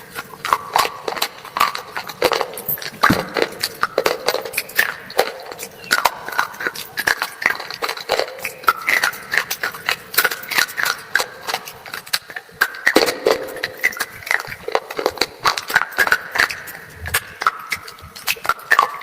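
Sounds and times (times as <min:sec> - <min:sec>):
crunching and chewing: 0:00.0 - 0:19.0.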